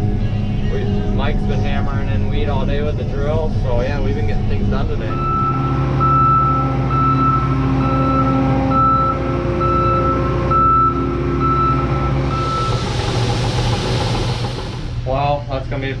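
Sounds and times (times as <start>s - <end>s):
back-up alarm beeping: 4.2s - 14.9s
combine engine running: 11.0s - 16.0s.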